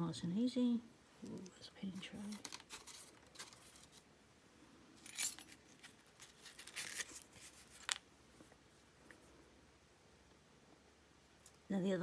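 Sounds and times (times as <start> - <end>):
metal padlock parts clinking: 5.0 - 7.2.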